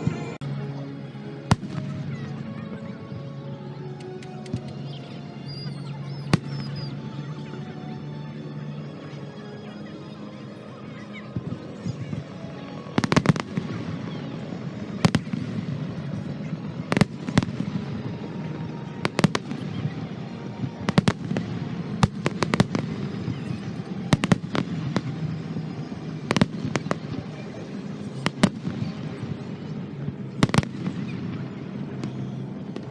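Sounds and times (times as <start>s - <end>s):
fireworks bangs: 11.4s - 18.2s, 18.8s - 32.9s.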